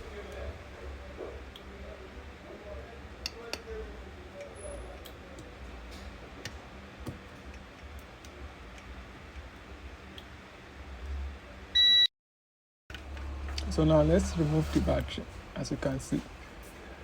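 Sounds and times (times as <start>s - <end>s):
high electronic beep: 11.8s - 12.1s.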